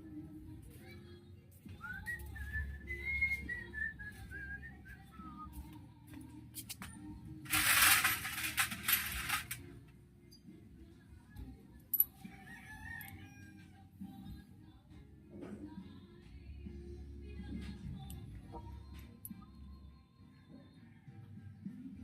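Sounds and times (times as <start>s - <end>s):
person whistling a tune: 1.8s - 5.7s.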